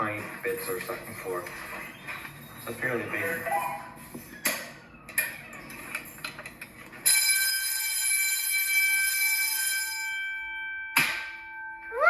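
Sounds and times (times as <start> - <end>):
fire alarm bell ringing: 7.0 - 12.0.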